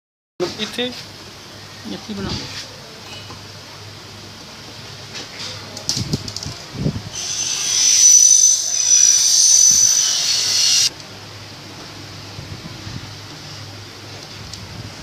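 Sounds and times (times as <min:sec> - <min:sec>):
high hiss of air spray: 0:07.2 - 0:10.9.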